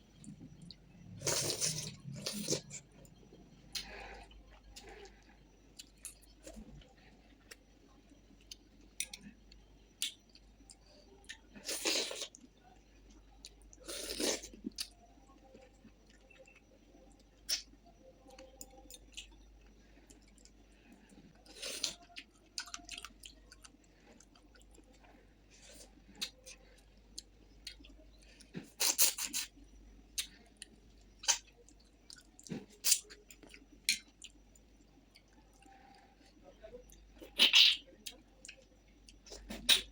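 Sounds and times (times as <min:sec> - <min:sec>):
chewing and mouth smacks: 0:30.2 - 0:36.0.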